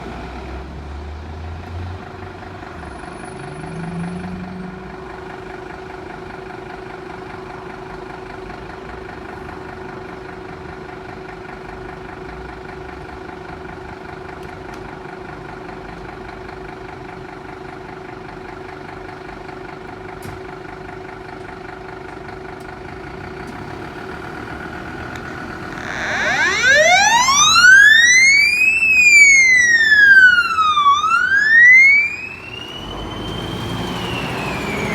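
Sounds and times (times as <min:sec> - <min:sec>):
fire engine humming: 0:21.1 - 0:34.9
siren wailing: 0:25.2 - 0:34.9.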